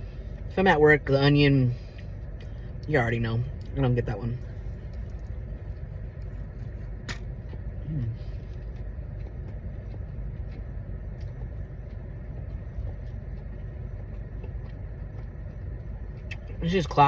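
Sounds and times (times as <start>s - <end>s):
steady low rumble: 0.0s - 17.0s
chewing and mouth clicks: 1.8s - 3.8s, 4.4s - 16.6s
person humming: 7.8s - 8.2s.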